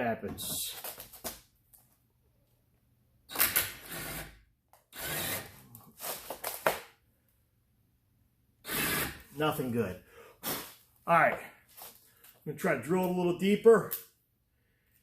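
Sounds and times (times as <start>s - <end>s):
impact driver bursts: 3.3s - 5.6s, 8.6s - 9.3s.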